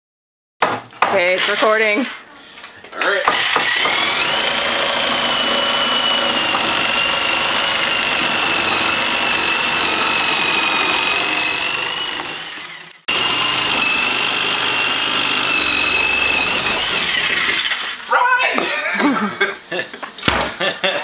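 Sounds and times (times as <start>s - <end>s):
power tool whining: 3.3s - 18.0s.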